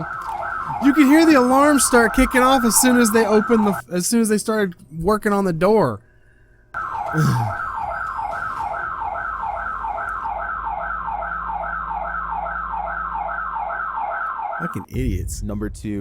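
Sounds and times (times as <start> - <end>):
burglar alarm siren wailing: 0.0 - 3.8, 6.8 - 14.9.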